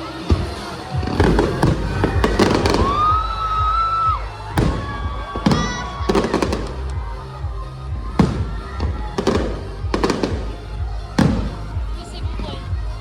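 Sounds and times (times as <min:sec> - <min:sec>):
background music: 0:00.0 - 0:13.0
fireworks bangs and crackles: 0:00.0 - 0:13.0
fireworks whistling: 0:00.4 - 0:06.9.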